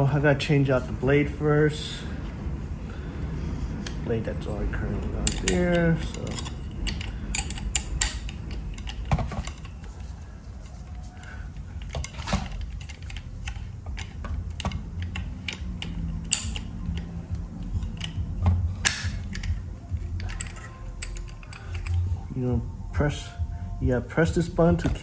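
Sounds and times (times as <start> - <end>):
low background rumble: 0.0 - 25.0
angle grinder handling clicks: 4.8 - 22.1.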